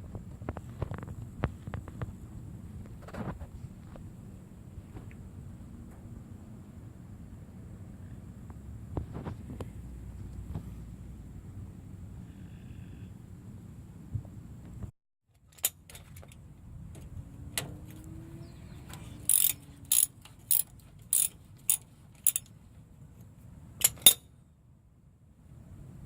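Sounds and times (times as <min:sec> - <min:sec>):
ratchet wrench clicking: 0:19.0 - 0:22.5.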